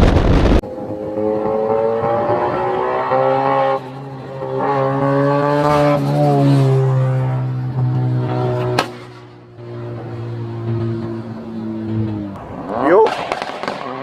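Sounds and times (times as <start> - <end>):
droning engine note: 9.1 - 12.2.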